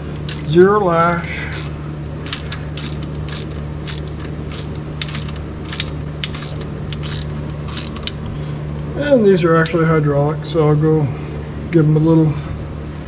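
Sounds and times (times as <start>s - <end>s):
steady low hum: 0.0s - 13.0s
ratchet wrench clicking: 0.1s - 8.2s.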